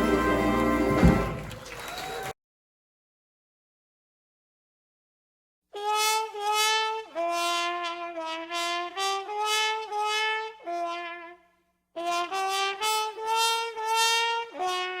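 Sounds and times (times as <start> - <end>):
brass horn playing a melody: 5.8 - 11.4, 12.0 - 15.0.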